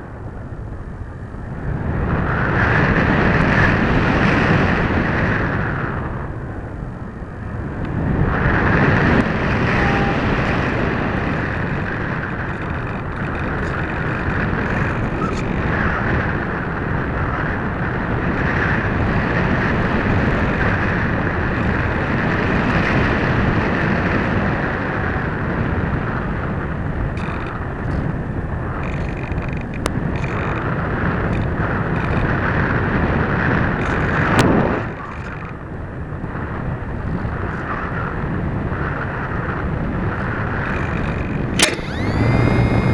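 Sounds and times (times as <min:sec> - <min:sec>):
airflow buffeting microphone: 0:00.0 - 0:42.9.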